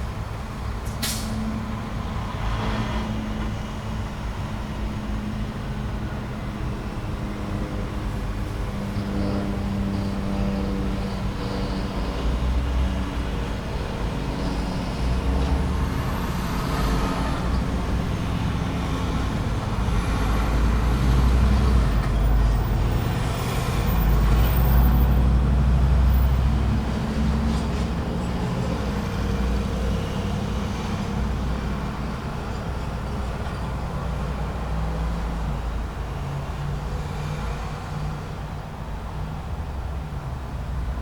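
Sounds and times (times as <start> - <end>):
road traffic rumbling: 0.0 - 41.0.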